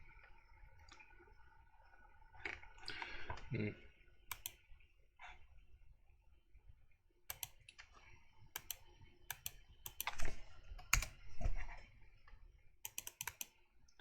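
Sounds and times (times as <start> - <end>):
keyboard keys and mouse clicking: 4.3 - 4.6, 7.3 - 7.7, 8.6 - 11.2, 12.8 - 13.6.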